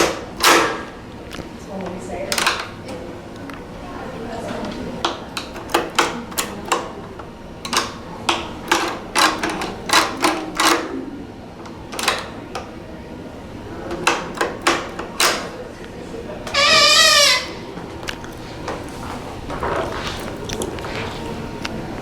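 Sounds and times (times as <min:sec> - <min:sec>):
creaking door squeal: 0:16.5 - 0:17.7.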